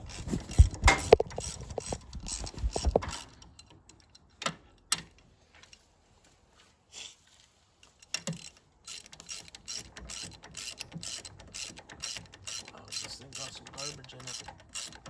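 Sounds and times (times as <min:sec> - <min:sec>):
ratchet wrench clicking: 0:08.0 - 0:15.0.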